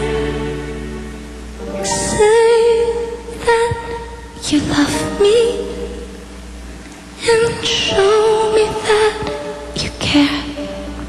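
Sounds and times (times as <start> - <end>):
sparse musical accompaniment: 0.0 - 11.0
woman singing a ballad: 1.8 - 6.1, 7.2 - 10.7.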